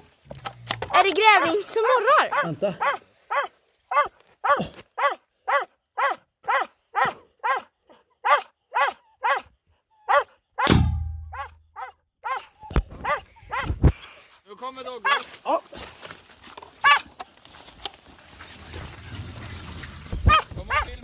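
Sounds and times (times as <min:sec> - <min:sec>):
dog barking: 0:01.3 - 0:09.5, 0:10.1 - 0:10.7, 0:11.3 - 0:13.8, 0:15.0 - 0:15.3, 0:16.8 - 0:17.0, 0:20.3 - 0:21.0
loud thud with low rumble: 0:10.7 - 0:11.6.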